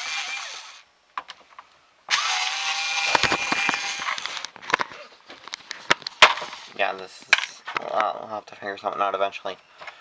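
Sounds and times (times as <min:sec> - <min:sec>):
handheld power tool running: 0:00.0 - 0:00.8, 0:02.1 - 0:04.5.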